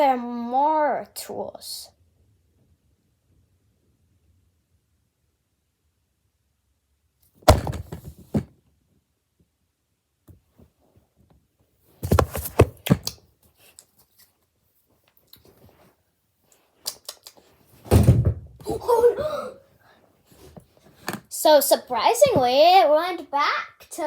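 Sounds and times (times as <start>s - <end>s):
hard object thudding: 7.5s - 8.5s, 12.0s - 13.1s.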